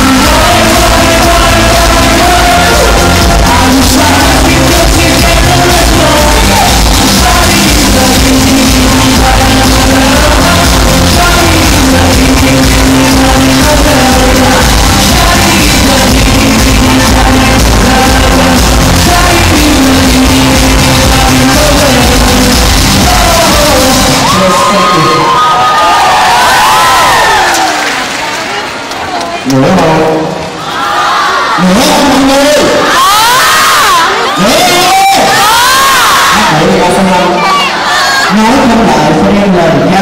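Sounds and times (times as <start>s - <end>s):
backing track with steady beat: 0.0s - 24.4s
person singing pop song: 0.0s - 25.3s.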